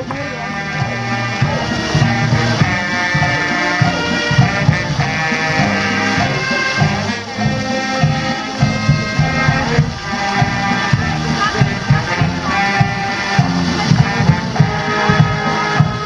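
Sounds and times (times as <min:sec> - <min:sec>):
low brass bass line: 0:00.0 - 0:16.0
trumpets and trombones holding notes: 0:00.0 - 0:16.0.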